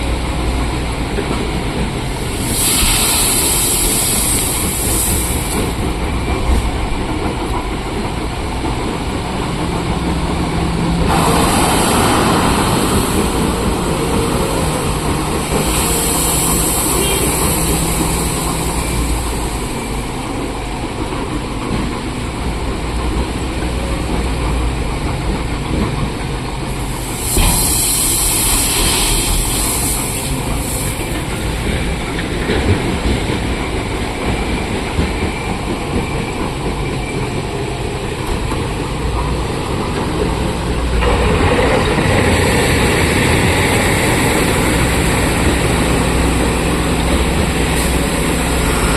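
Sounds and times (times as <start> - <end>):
heavy machinery engine drone: 40.2 - 48.9.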